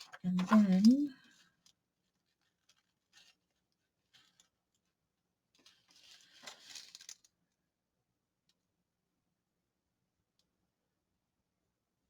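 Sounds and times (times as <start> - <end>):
paper rustling: 0.0 - 4.9, 5.6 - 7.3.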